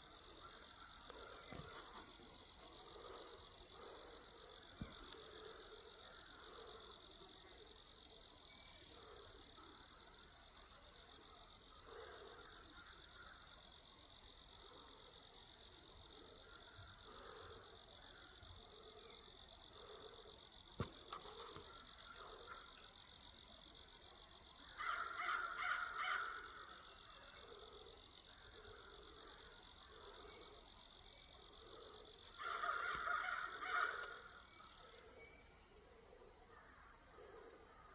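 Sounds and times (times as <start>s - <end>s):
insects droning: 0.0s - 37.9s
crows cawing: 24.8s - 26.7s, 32.4s - 34.3s.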